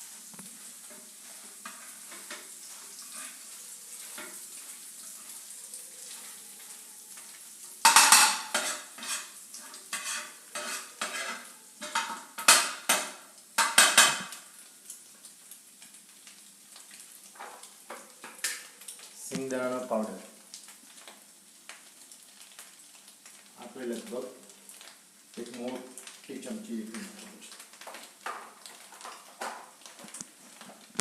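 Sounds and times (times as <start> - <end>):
food sizzling in oil: 0.0 - 31.0
spatula scraping a pan: 0.2 - 14.3.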